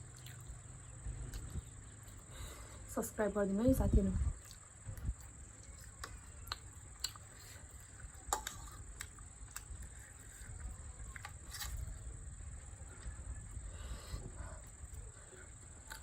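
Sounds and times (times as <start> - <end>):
insects chirring: 0.0 - 16.0
chewing and utensil clicks: 4.4 - 11.9.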